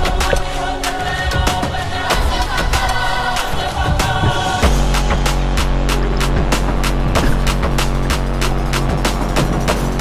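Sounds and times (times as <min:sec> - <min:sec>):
pop music with drum beat: 0:00.0 - 0:10.0.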